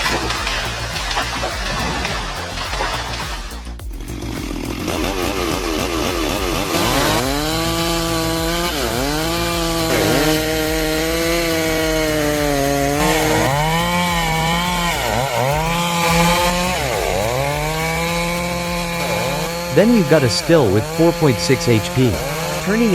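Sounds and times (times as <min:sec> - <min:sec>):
chainsaw cutting through wood: 0:00.0 - 0:22.9.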